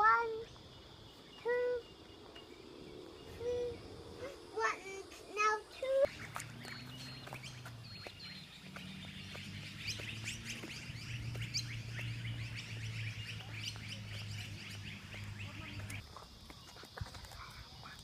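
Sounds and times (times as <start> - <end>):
small birds chirping: 0.0 - 18.0
steady low hum: 0.4 - 16.0.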